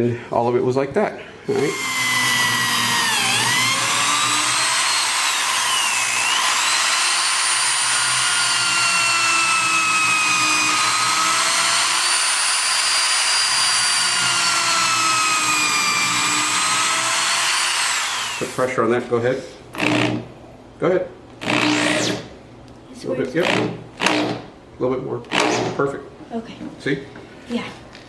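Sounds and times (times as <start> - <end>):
power drill drilling into wood: 1.6 - 18.6, 21.4 - 22.2.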